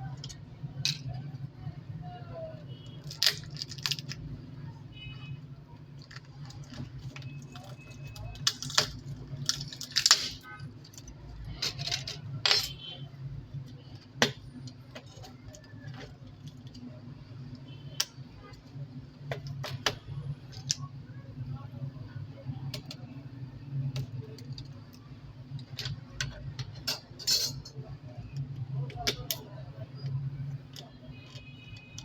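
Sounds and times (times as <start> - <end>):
metal tools clicking and clinking: 6.0 - 12.9, 25.6 - 27.8.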